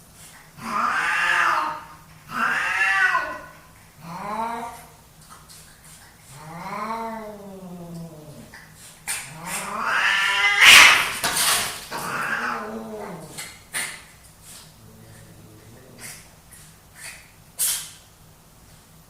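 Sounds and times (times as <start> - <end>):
cats yowling in a fight: 0.6 - 5.0, 6.3 - 14.0.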